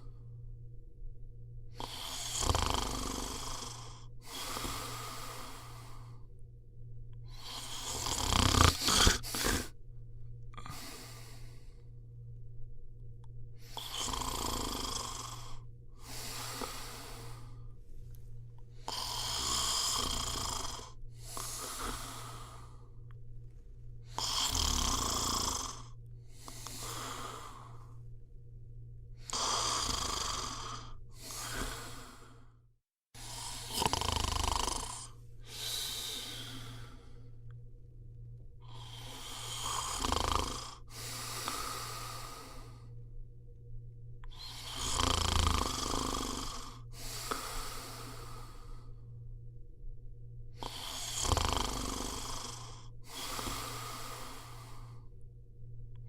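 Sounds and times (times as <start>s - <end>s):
steady low hum: 0.0s - 56.0s
person snoring: 1.7s - 6.3s, 7.3s - 9.8s, 10.5s - 11.9s, 13.6s - 17.7s, 18.7s - 23.2s, 24.0s - 28.0s, 29.2s - 32.5s, 33.2s - 37.6s, 38.6s - 43.0s, 44.2s - 49.1s, 50.5s - 55.1s.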